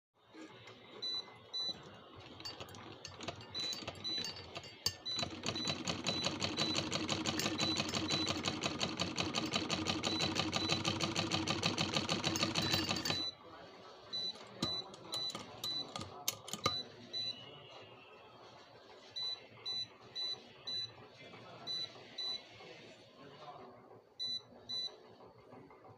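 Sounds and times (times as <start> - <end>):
sewing machine stitching: 0.3 - 13.3.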